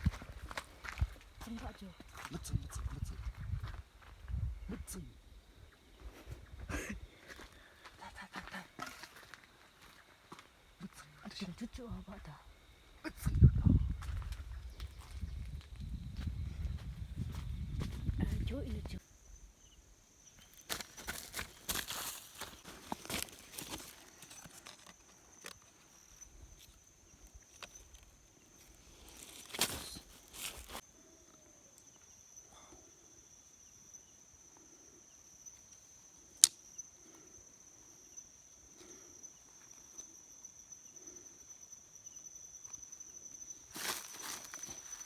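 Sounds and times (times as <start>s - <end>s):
rustling and handling noises: 20.6s - 26.8s, 27.4s - 30.8s.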